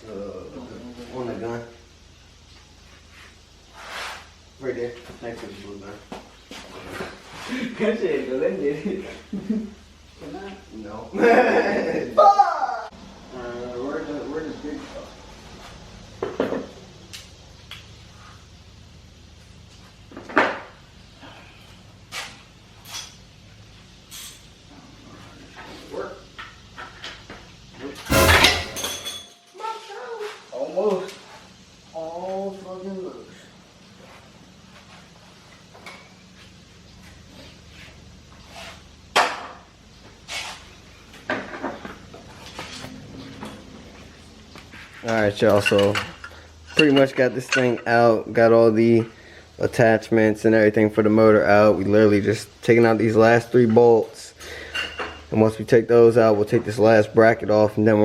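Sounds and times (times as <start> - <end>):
metal tools clanking: 28.1 - 29.5.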